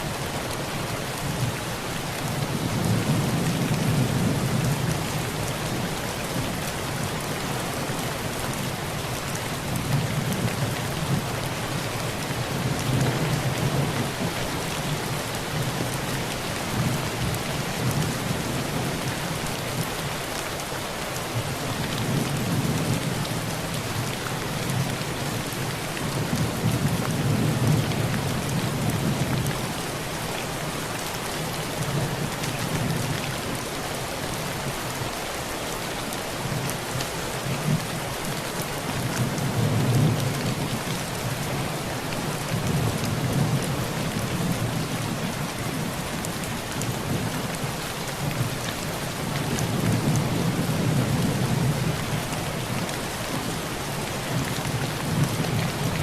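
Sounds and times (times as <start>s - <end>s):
heavy rain on a tin roof: 0.0s - 56.0s.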